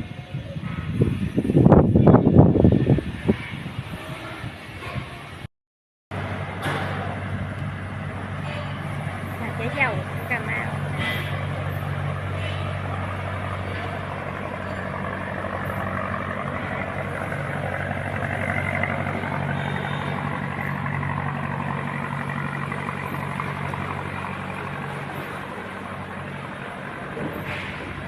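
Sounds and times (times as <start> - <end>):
diesel engine humming: 6.1 - 28.0.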